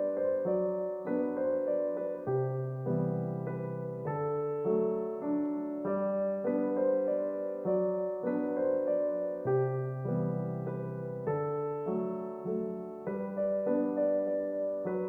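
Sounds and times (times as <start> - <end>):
gentle piano tune: 0.0 - 15.0.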